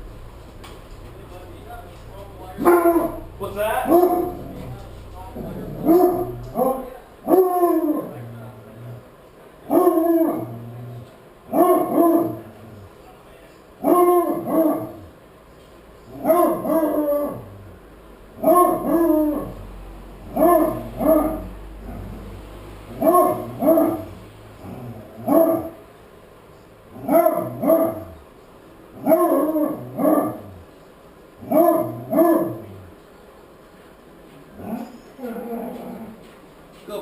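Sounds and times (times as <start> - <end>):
dog barking: 2.6 - 4.8, 5.4 - 8.2, 9.7 - 10.6, 11.5 - 12.6, 13.8 - 15.1, 16.1 - 17.5, 18.4 - 19.6, 20.3 - 21.6, 22.9 - 24.2, 25.2 - 25.8, 27.0 - 28.2, 29.0 - 30.6, 31.4 - 32.8.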